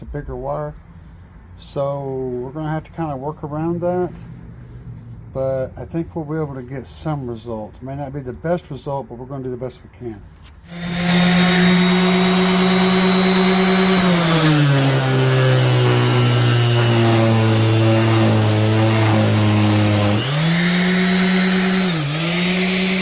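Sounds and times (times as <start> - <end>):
electric sander motor: 10.7 - 23.0.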